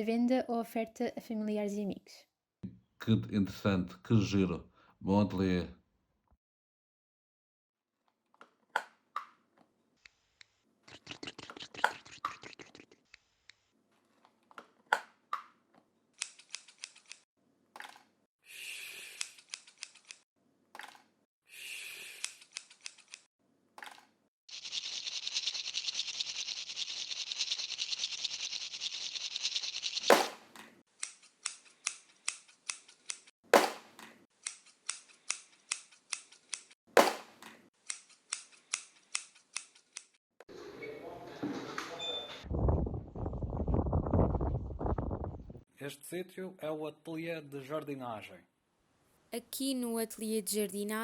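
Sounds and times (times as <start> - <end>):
scissors snipping: 16.2 - 17.2, 19.2 - 20.2, 22.2 - 23.3, 31.0 - 33.3, 34.0 - 36.8, 37.4 - 40.2
sharp snap: 32.3 - 35.0, 36.1 - 37.6.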